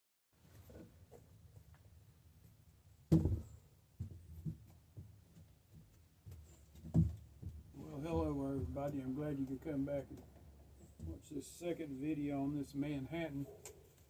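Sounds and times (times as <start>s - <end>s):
dull knocks and bumps: 3.1s - 8.9s.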